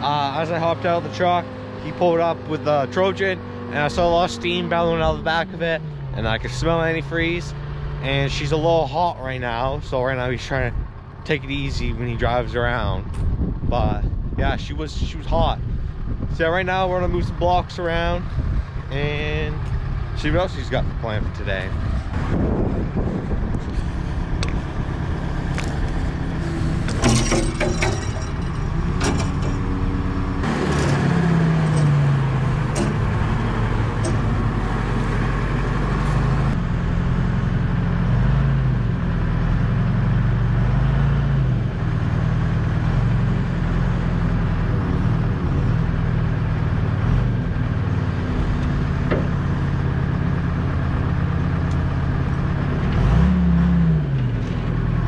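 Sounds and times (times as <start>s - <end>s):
wheel loader engine revving: 0.0s - 13.4s, 17.0s - 55.0s
metal clanks and knocks: 25.5s - 35.3s, 49.0s - 49.6s.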